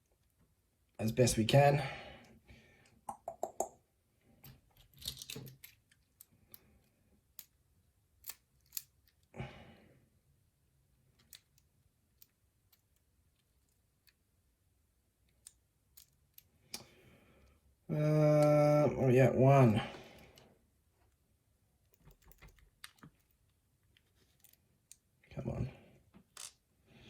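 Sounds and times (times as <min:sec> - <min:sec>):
metallic clicks of lock parts: 0:04.4 - 0:07.6, 0:08.2 - 0:09.3, 0:11.1 - 0:14.2, 0:15.2 - 0:16.9, 0:21.8 - 0:25.1, 0:26.2 - 0:26.6.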